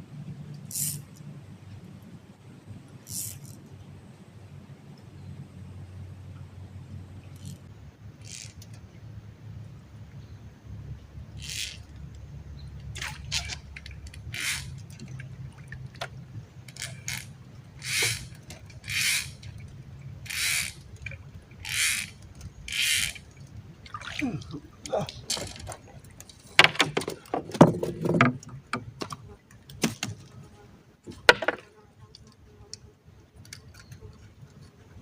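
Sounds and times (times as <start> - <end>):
water splashing: 12.9 - 30.4.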